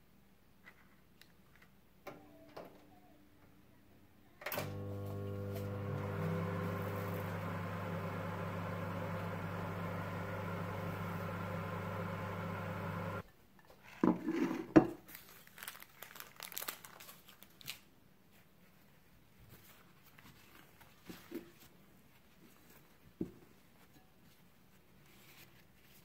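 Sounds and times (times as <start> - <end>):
microwave oven humming: 4.5 - 13.2
crinkling and rustling: 13.7 - 26.0.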